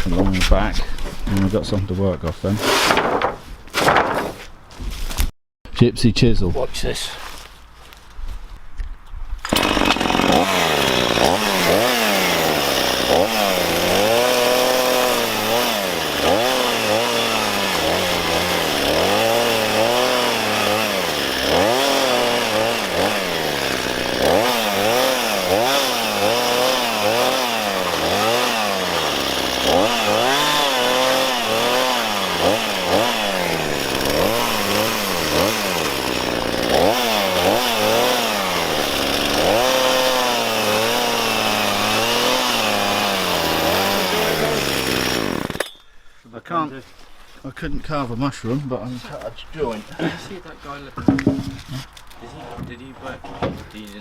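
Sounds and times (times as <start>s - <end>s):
chainsaw cutting into timber: 2.4s - 4.4s, 9.4s - 45.9s, 51.1s - 52.0s.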